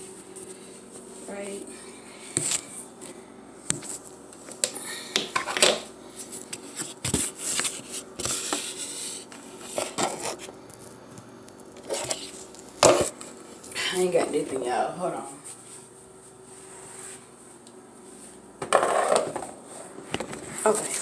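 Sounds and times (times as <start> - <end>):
hard objects knocking and scraping: 18.6 - 19.6.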